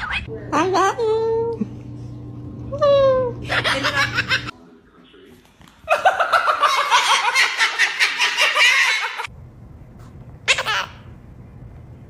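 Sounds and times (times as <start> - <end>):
high-pitched pulsing laughter: 2.8 - 4.5, 5.9 - 9.3.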